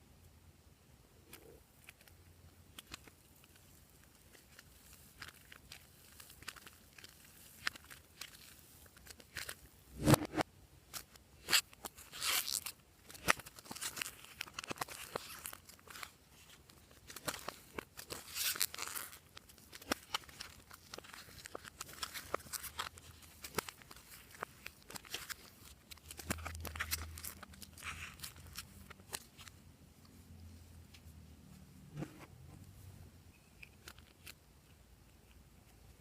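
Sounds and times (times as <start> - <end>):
hands squishing slime: 2.7 - 10.3.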